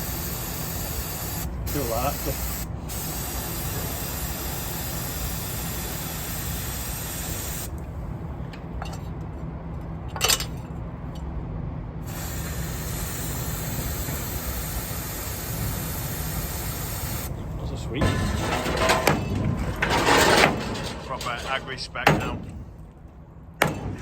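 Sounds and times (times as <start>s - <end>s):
aerosol can spraying: 2.1s - 7.7s, 12.1s - 17.3s.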